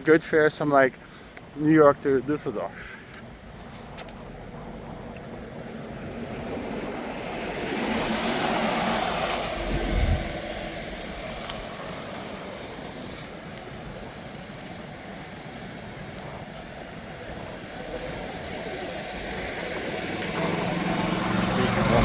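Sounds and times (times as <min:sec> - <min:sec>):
outdoor background noise: 0:00.0 - 0:22.0
vehicle passing close by: 0:05.2 - 0:13.1, 0:17.8 - 0:22.0.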